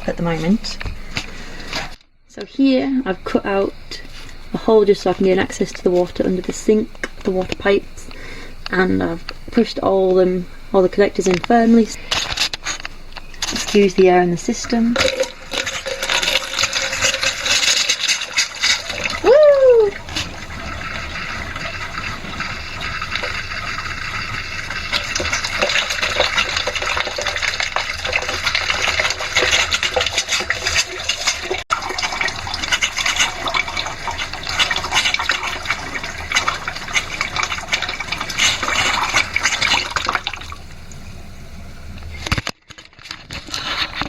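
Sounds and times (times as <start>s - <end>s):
water spluttering from tap: 13.4s - 41.1s.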